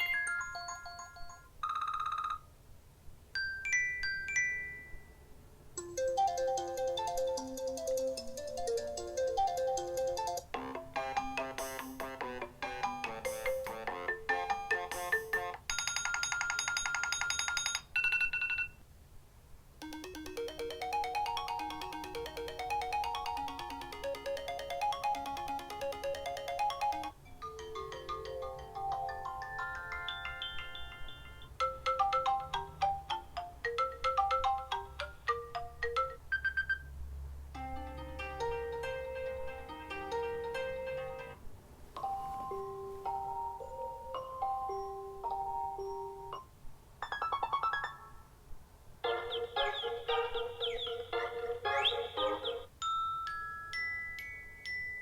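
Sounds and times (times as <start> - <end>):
melodic ringtone: 0.0 - 2.5, 3.4 - 5.2, 5.8 - 18.8, 19.8 - 37.0, 37.6 - 41.4, 42.0 - 48.2, 49.0 - 55.0
repeating electronic ringtone: 0.0 - 2.5, 5.8 - 18.8, 19.8 - 36.9.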